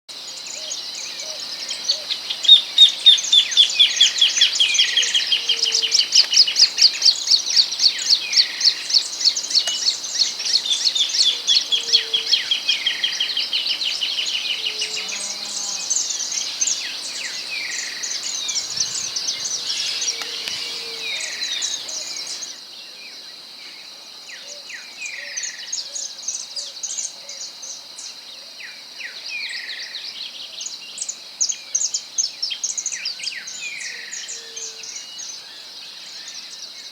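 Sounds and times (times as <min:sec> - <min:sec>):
high insect drone: 0:00.1 - 0:25.7
whistled and chirped birdsong: 0:00.4 - 0:23.1.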